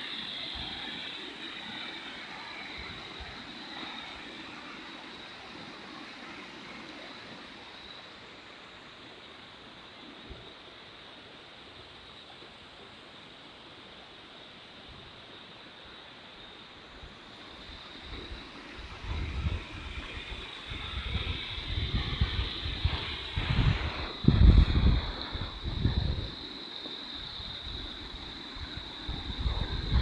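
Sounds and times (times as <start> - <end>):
faint outdoor noise: 0.0 - 30.0
wind buffeting microphone: 17.7 - 30.0.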